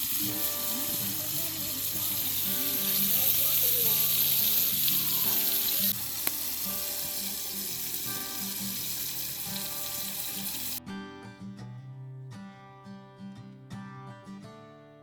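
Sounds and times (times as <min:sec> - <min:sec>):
burger patties sizzling: 0:00.0 - 0:10.8.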